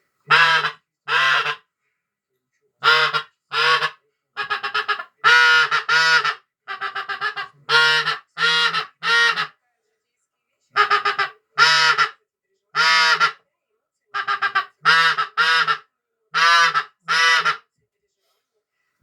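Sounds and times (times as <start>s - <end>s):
goose call honks: 0.3s - 1.6s, 2.8s - 9.5s, 10.8s - 12.2s, 12.8s - 13.4s, 14.2s - 17.6s
goose call short clucks: 0.3s - 1.6s, 16.4s - 17.6s.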